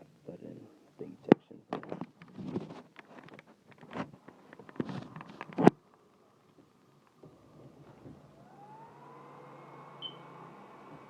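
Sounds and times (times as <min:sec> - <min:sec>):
cooling fan whine: 0:06.8 - 0:11.0.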